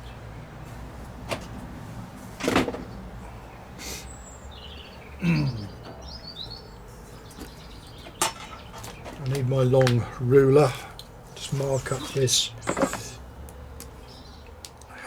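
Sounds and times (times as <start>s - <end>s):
small bird chirping: 2.9s - 9.2s.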